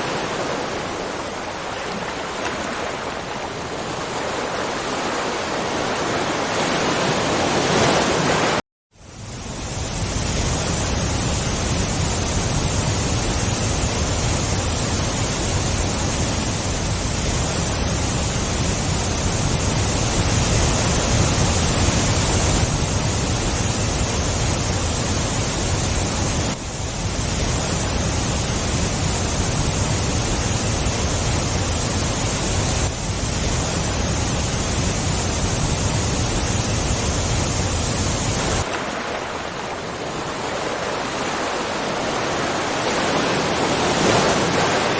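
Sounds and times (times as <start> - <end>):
waterfall rushing: 0.0 - 8.6, 17.5 - 44.9.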